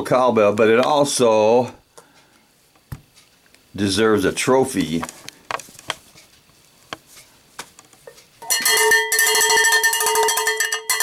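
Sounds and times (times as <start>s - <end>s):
faint clicks and taps: 4.8s - 8.4s
cowbell struck rapidly: 8.4s - 11.0s.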